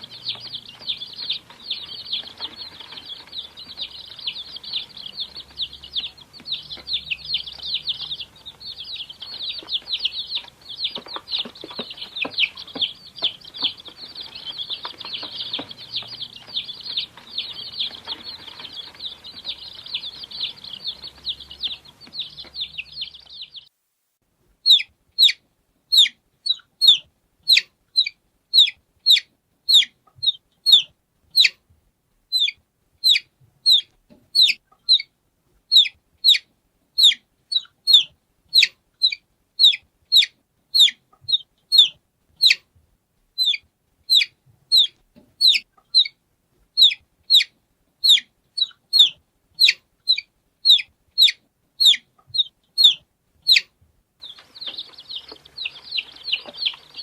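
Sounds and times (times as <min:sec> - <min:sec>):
baby chick peeping: 0:00.0 - 0:23.7, 0:24.6 - 0:31.7, 0:32.3 - 0:42.8, 0:43.4 - 0:57.0
several chicks peeping: 0:00.0 - 0:23.7, 0:24.6 - 0:31.7, 0:32.3 - 0:42.8, 0:43.4 - 0:57.0
light hiss: 0:54.2 - 0:57.0.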